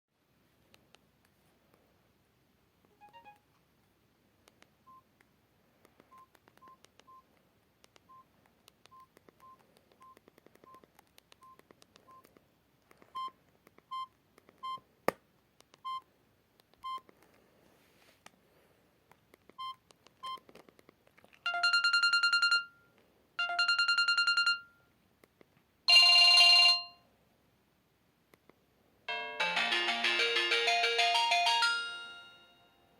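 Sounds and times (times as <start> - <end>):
buzzy ringtone tones: 3.0 - 3.4, 21.5 - 22.8, 23.4 - 24.8, 29.1 - 32.9
phone key beeps: 6.0 - 7.3, 7.9 - 12.3, 13.1 - 14.8, 15.8 - 16.1, 16.7 - 17.1, 19.5 - 20.5, 21.5 - 22.7, 23.4 - 24.7.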